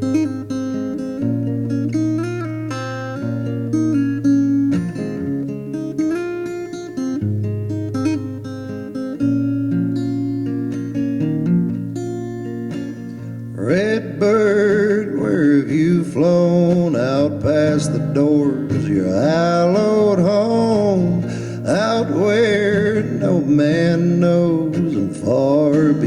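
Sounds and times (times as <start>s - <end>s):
acoustic guitar: 0.0s - 26.0s
man singing country song: 13.5s - 26.0s.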